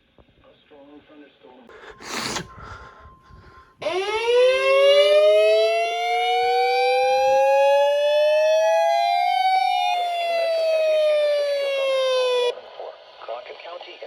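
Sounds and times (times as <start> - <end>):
two-tone warning siren: 3.8 - 12.5.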